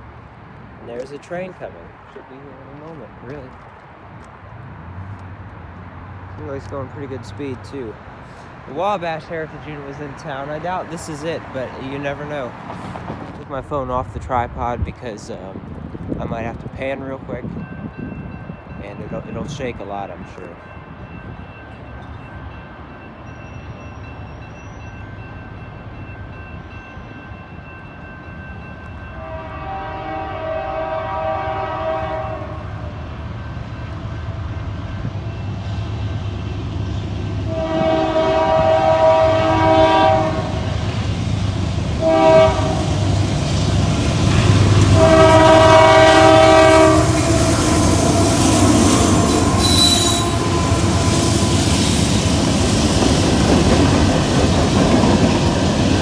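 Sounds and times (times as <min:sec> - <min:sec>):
train horn blasts: 0:29.2 - 0:32.8, 0:37.5 - 0:40.8, 0:42.0 - 0:43.2, 0:44.2 - 0:52.3
train wheels rumbling and rattling: 0:31.4 - 0:56.0.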